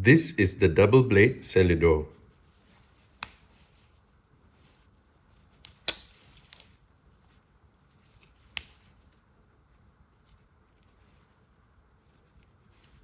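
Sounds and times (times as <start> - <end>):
pocket knife clicks and knocks: 5.6 - 6.6.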